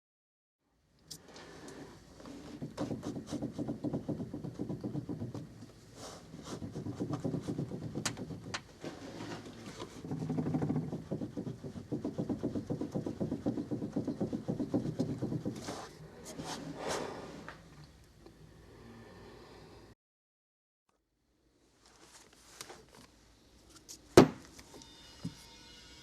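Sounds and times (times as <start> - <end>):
steering gearbox knocking rapidly: 2.8 - 5.6, 10.0 - 15.6.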